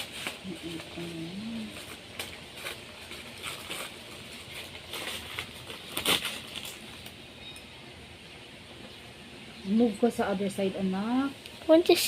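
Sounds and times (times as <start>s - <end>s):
packaging rustling and crinkling: 0.0s - 7.2s.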